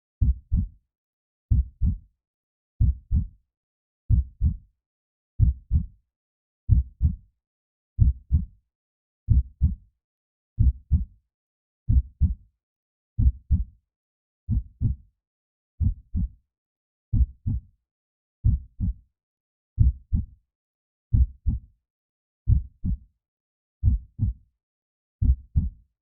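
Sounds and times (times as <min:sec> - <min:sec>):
heartbeat thumps: 0:00.2 - 0:00.7, 0:01.5 - 0:02.0, 0:02.8 - 0:03.3, 0:04.1 - 0:04.6, 0:05.4 - 0:05.8, 0:08.0 - 0:08.4, 0:22.5 - 0:23.0, 0:23.8 - 0:24.3.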